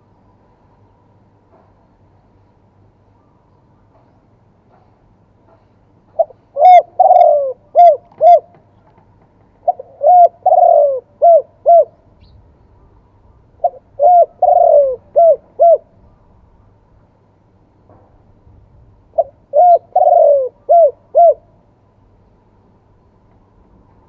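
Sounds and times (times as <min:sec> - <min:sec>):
dove cooing: 0:06.2 - 0:08.7, 0:09.6 - 0:12.3, 0:13.6 - 0:16.0, 0:19.1 - 0:21.6.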